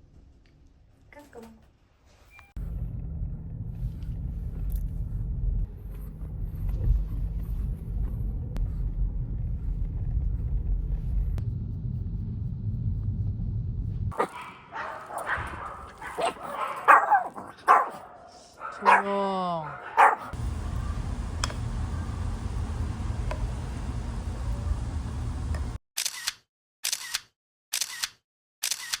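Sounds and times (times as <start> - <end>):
low rumble: 2.6 - 14.2, 20.3 - 25.8
dog barking and yipping: 14.1 - 22.1.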